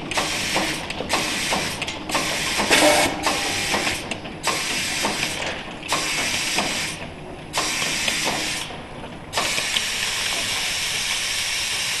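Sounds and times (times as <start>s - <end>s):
machine clicking and knocking: 0.0s - 10.6s
air hissing in bursts: 0.1s - 3.0s, 3.6s - 8.7s.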